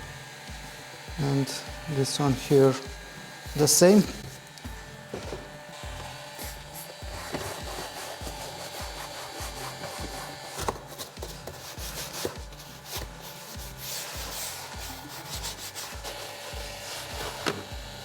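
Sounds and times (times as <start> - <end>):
rubbing on car door trim: 5.2 - 17.7.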